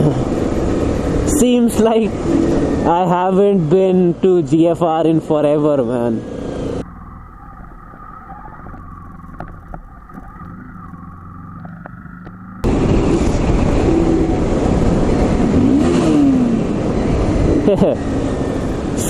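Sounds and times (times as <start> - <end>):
motorcycle engine: 0.0 - 19.0
wind rush: 12.6 - 19.0.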